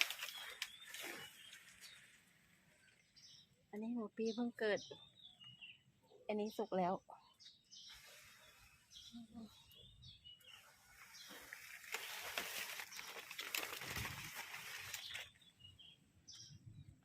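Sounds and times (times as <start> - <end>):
outdoor rustling hiss with crackles: 0.0 - 3.2, 10.4 - 15.4
faint bird chirps: 0.2 - 12.0.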